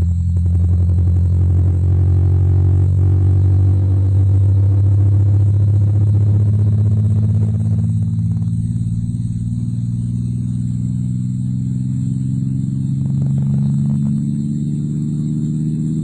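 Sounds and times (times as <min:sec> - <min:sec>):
layered humming drone: 0:00.0 - 0:16.0.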